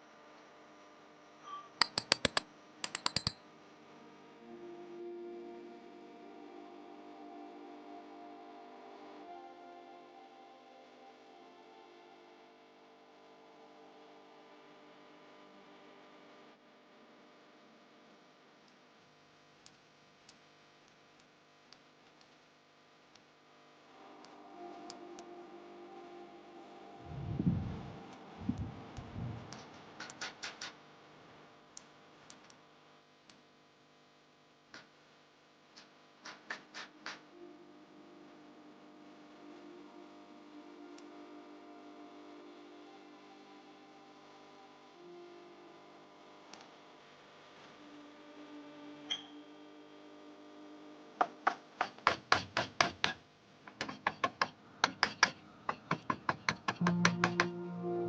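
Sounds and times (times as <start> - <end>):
faint background music: 0.0 - 19.4, 22.7 - 31.7, 36.1 - 51.7, 56.8 - 58.0
faint steady hum: 0.0 - 30.2, 30.8 - 52.1
hammer tapping: 1.8 - 3.4, 51.2 - 57.6
sharp clicks: 1.8 - 3.4.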